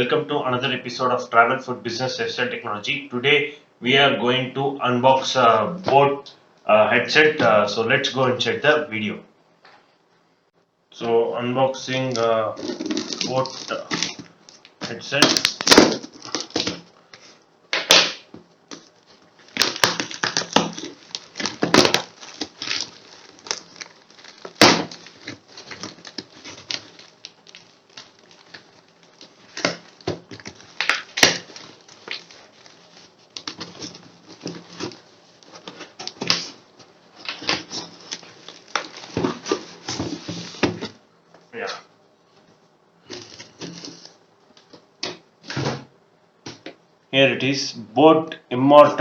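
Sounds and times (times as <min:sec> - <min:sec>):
packaging crinkling and rustling: 0:11.9 - 0:41.0, 0:42.3 - 0:45.8.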